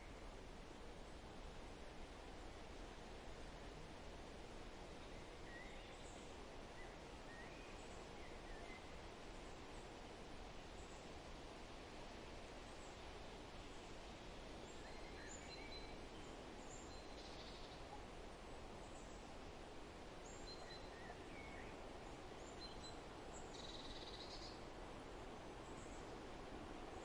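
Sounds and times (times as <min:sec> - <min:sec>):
background hiss: 0:00.0 - 0:27.0.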